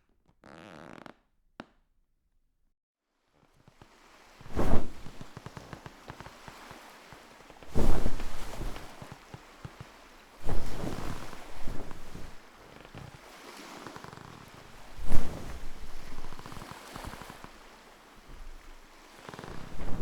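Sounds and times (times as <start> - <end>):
bedsheet flapping: 4.4 - 6.6, 7.6 - 17.7, 18.3 - 20.0.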